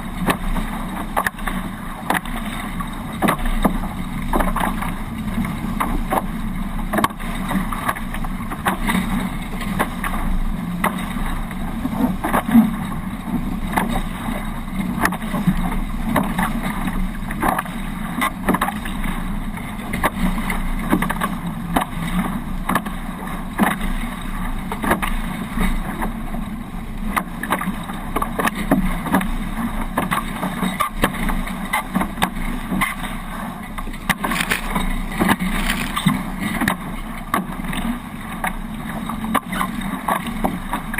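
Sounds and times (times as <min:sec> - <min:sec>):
water slapping against boat hulls: 0:00.0 - 0:40.9.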